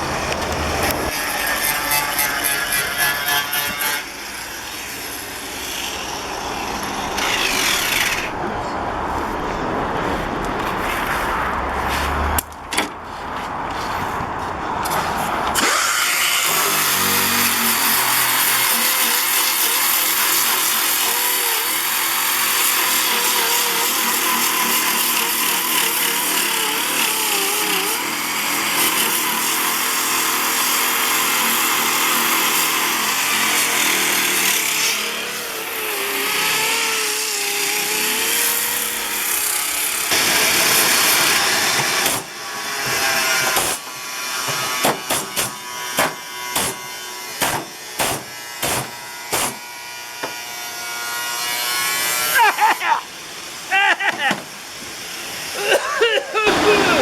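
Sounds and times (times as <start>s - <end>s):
power tool grinding metal: 0.0s - 8.4s, 15.6s - 57.0s
sharp knocks: 44.4s - 46.8s, 47.4s - 49.6s.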